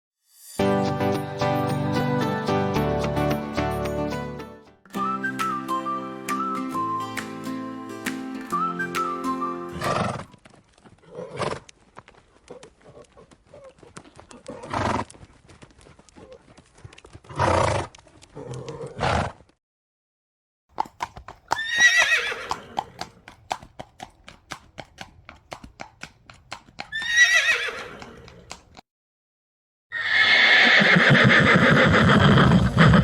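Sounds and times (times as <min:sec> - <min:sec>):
hoofbeats clip-clopping: 0:08.5 - 0:19.6, 0:20.7 - 0:28.8
horse whinnying: 0:09.7 - 0:10.3, 0:21.5 - 0:23.2, 0:26.9 - 0:28.6, 0:29.9 - 0:33.0
horse snorting: 0:09.8 - 0:10.3, 0:12.5 - 0:15.1, 0:17.3 - 0:19.4, 0:20.7 - 0:28.8, 0:30.6 - 0:33.0.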